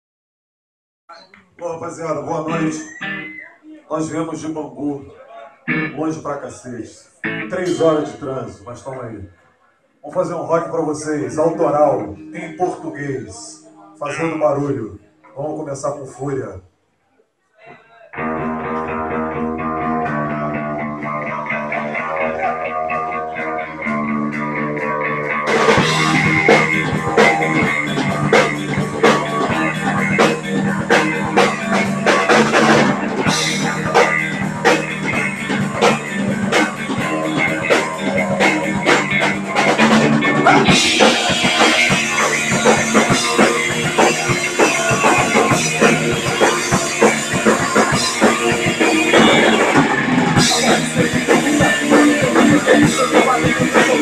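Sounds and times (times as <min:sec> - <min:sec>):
drums: 0:01.9 - 0:03.5, 0:18.2 - 0:54.0
electric guitar chords: 0:02.2 - 0:03.5, 0:05.7 - 0:06.4, 0:07.1 - 0:08.5, 0:11.1 - 0:15.2, 0:18.2 - 0:54.0
punk rock band playing: 0:02.3 - 0:03.5, 0:05.7 - 0:06.2, 0:07.2 - 0:08.2, 0:18.2 - 0:54.0.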